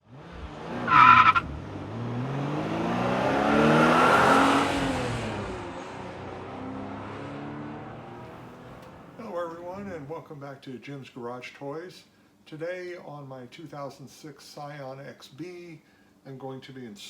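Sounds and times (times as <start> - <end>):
car engine revving past: 0.1 - 9.2
tyre squeal: 0.9 - 1.4.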